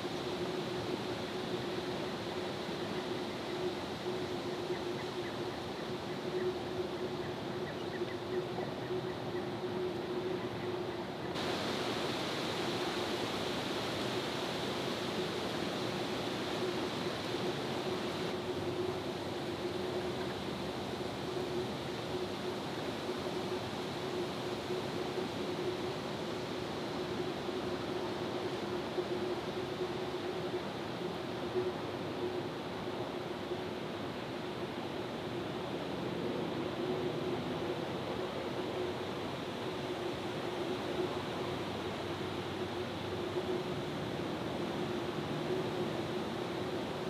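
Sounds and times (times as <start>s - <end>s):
faint steady hum: 0.0s - 47.0s
steady hiss: 11.3s - 20.4s.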